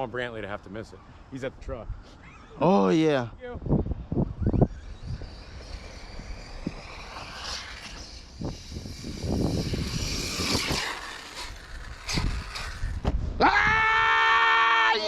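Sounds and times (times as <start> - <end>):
rc truck motor whining: 3.9 - 13.2.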